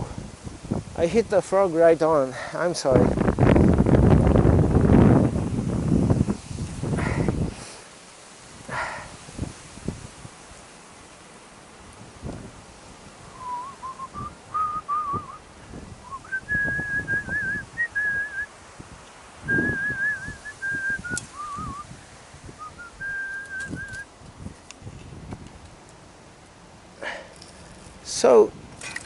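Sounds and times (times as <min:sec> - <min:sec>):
person whistling a tune: 0:13.4 - 0:15.4, 0:16.1 - 0:18.5, 0:19.5 - 0:21.9, 0:22.6 - 0:24.0.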